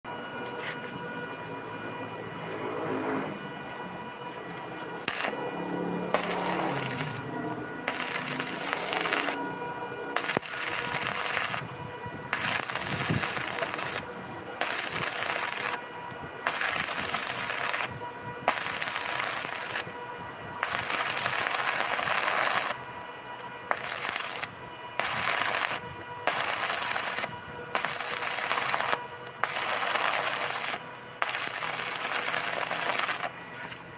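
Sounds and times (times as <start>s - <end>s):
welding arc crackling and sizzling: 5.1s - 5.4s, 6.1s - 9.6s, 10.2s - 11.7s, 12.3s - 15.9s, 16.5s - 20.0s, 20.6s - 22.9s, 23.7s - 33.8s.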